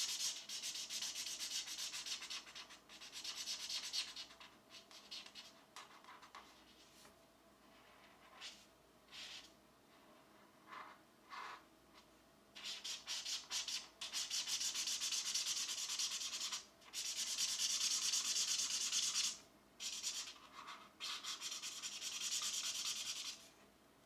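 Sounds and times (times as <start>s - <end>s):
pencil scratching on paper: 0.0s - 6.9s, 12.6s - 23.4s.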